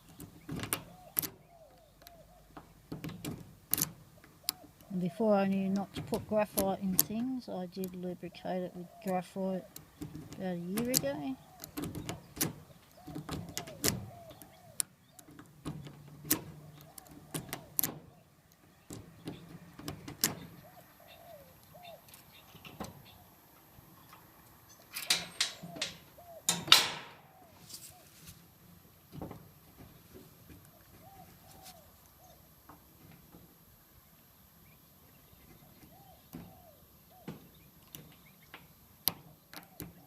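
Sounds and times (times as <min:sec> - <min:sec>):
bird calling: 0:00.0 - 0:02.8, 0:04.0 - 0:19.6, 0:20.2 - 0:28.4, 0:30.6 - 0:32.6, 0:34.6 - 0:40.0
lock pick clicking in padlock: 0:03.7 - 0:04.6, 0:25.0 - 0:27.2.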